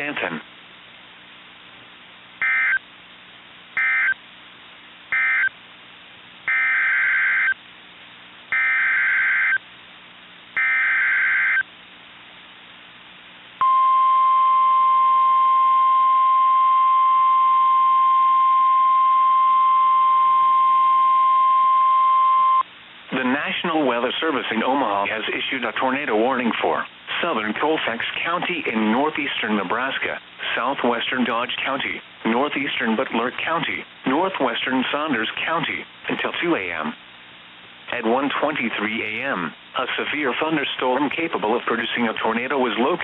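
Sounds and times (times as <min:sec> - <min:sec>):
steady warning alarm tone: 0:02.4 - 0:02.8, 0:03.8 - 0:04.2, 0:05.1 - 0:05.5, 0:06.5 - 0:07.6, 0:08.5 - 0:09.6, 0:10.6 - 0:11.6.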